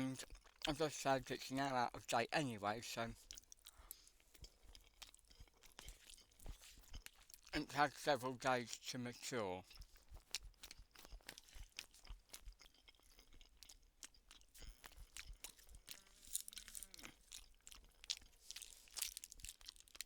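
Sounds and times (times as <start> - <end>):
person chewing food: 0.0 - 0.8, 3.0 - 20.0.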